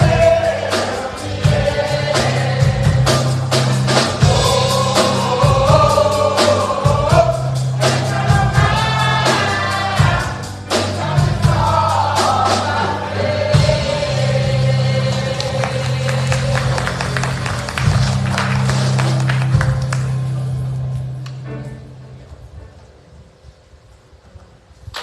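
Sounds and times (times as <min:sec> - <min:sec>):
gospel choir singing: 0:00.0 - 0:18.6
drum strokes: 0:00.0 - 0:20.4.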